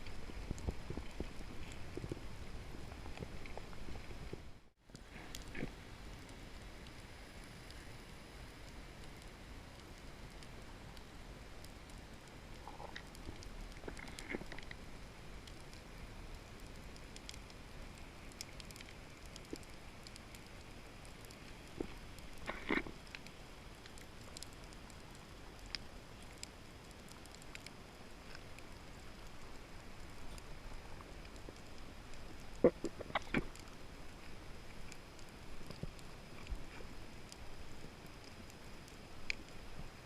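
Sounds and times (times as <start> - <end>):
faint underwater crackle: 0.0 - 40.0
clicks and pops: 32.5 - 33.7.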